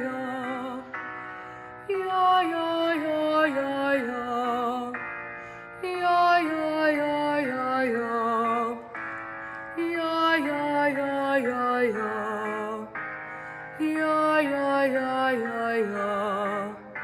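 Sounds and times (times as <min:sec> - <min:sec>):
woman singing wordless runs: 0:09.8 - 0:12.9.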